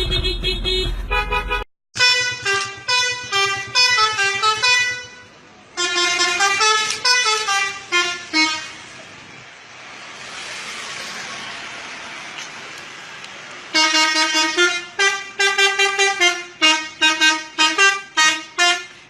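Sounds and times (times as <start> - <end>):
musical car horn: 0.0 - 8.8, 13.8 - 19.0
steady background noise: 5.1 - 14.6.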